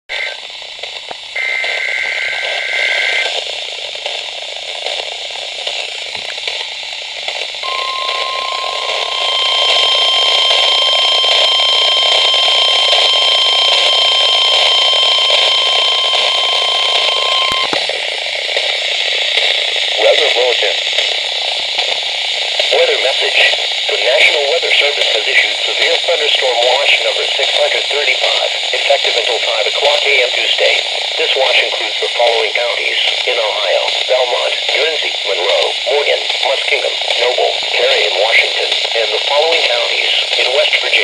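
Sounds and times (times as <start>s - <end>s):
heavy radio static: 1.4s - 3.3s, 7.6s - 17.8s, 20.0s - 20.8s, 22.8s - 41.0s
higher alarm tone: 7.6s - 17.8s
steady warning alarm tone: 7.6s - 17.8s
warbling data tones: 7.6s - 17.8s.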